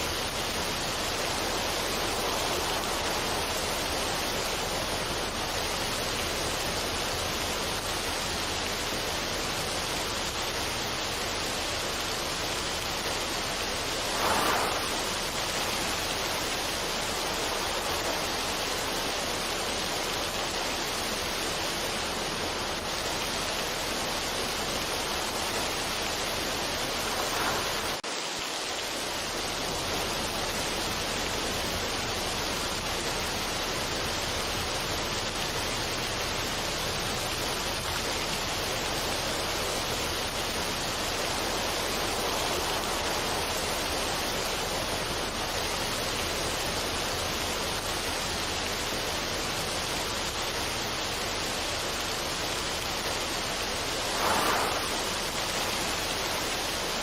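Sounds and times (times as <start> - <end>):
steady rushing noise: 0.0 - 57.0
brief whoosh: 14.0 - 16.0, 54.0 - 56.0.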